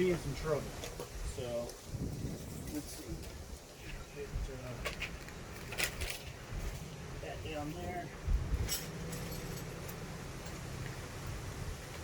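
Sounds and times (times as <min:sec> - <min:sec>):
steady low rumble: 0:06.4 - 0:12.0.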